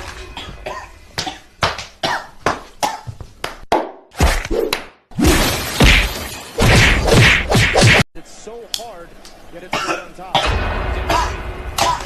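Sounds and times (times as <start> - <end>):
person coughing: 9.7 - 12.0.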